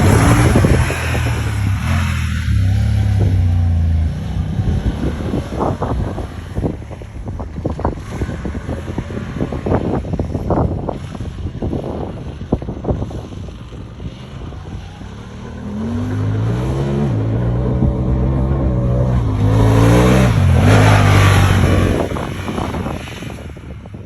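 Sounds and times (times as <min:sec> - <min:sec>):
engine revving and shifting: 0:00.0 - 0:06.8, 0:14.0 - 0:23.6
rush of wind noise: 0:00.0 - 0:24.0
wind buffeting: 0:00.0 - 0:24.0.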